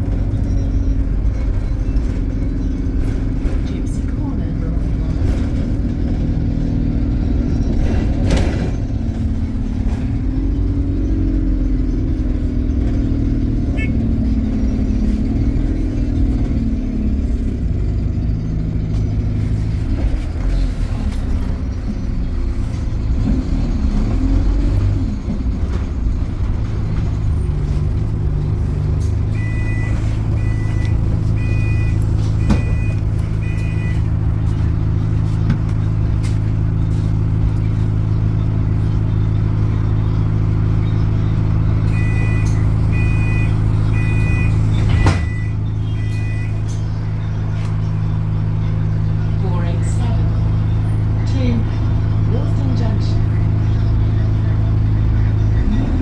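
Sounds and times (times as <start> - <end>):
bus diesel engine idling: 0.0 - 56.0
bus door chime beeping: 28.8 - 51.8.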